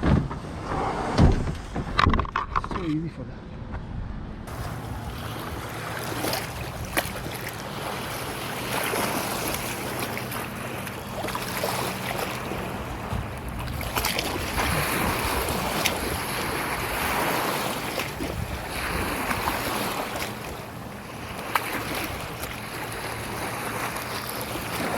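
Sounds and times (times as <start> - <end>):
sharp knocks: 0.0 - 3.0
wind buffeting microphone: 0.0 - 9.6, 12.5 - 23.8
water swishing and splashing: 4.4 - 24.9.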